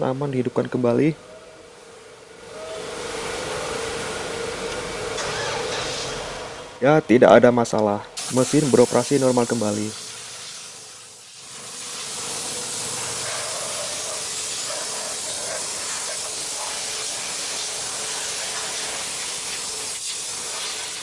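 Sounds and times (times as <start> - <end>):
steady hiss: 0.0 - 21.0.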